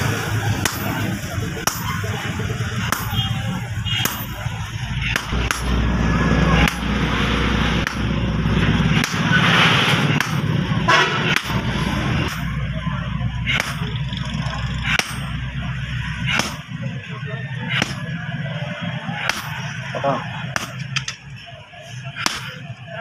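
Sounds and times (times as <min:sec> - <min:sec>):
hammer striking steel on anvil: 0:00.6 - 0:02.0, 0:02.8 - 0:04.5, 0:05.1 - 0:05.9, 0:06.6 - 0:07.0, 0:07.8 - 0:08.3, 0:08.9 - 0:10.6, 0:11.2 - 0:12.7, 0:13.4 - 0:14.0, 0:14.8 - 0:17.0, 0:17.6 - 0:18.3, 0:19.1 - 0:21.3, 0:22.2 - 0:22.8.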